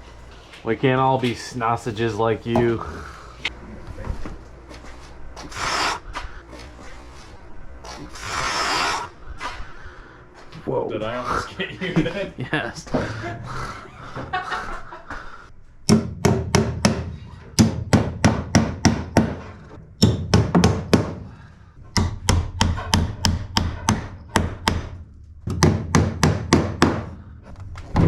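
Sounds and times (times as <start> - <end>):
hammer striking: 15.9 - 27.2.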